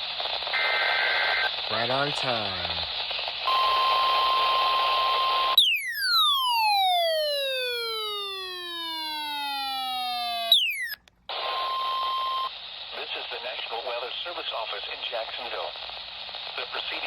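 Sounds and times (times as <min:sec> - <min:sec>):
radio hiss: 0:00.0 - 0:05.2, 0:11.3 - 0:17.0
steady alarm tone: 0:03.5 - 0:12.5.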